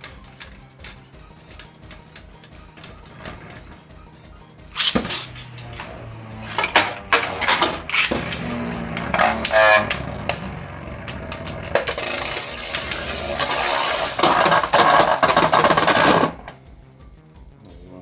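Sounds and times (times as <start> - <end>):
spinning tops clattering: 4.7 - 16.5.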